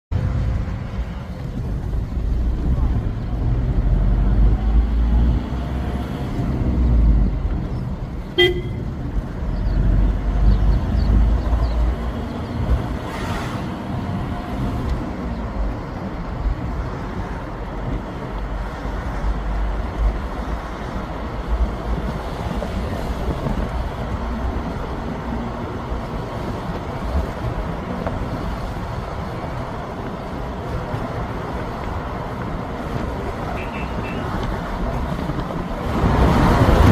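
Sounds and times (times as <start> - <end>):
heavy low vehicle rumble: 0.1 - 36.9
vehicle horn toot: 8.4 - 8.9, 33.5 - 34.3.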